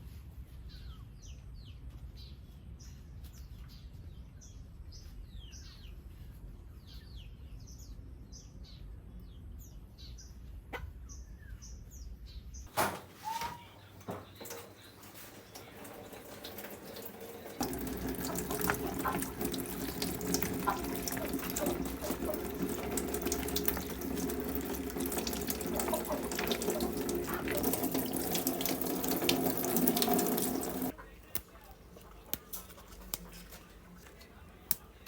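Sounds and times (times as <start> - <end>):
knocks and clatter in water: 12.7 - 30.9
tap water running: 12.7 - 31.0.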